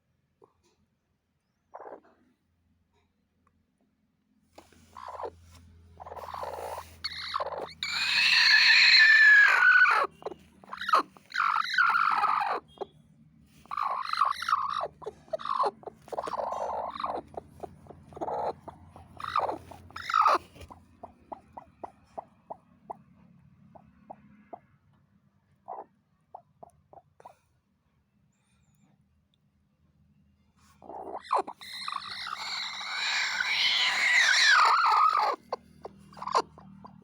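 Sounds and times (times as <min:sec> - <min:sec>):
hen harsh calls: 0:06.0 - 0:12.9, 0:13.6 - 0:22.6, 0:30.8 - 0:37.0.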